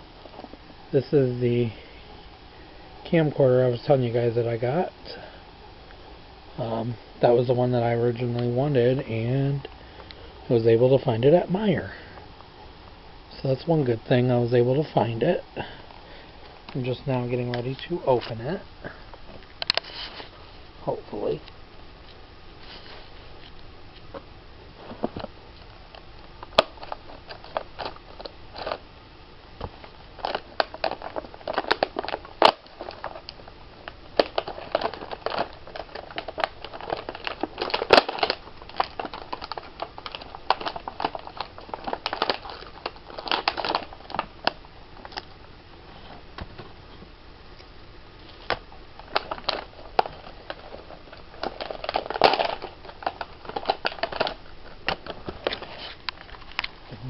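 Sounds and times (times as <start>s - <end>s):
packaging crinkling and clicking: 24.9s - 28.8s, 29.6s - 45.4s, 48.3s - 56.8s.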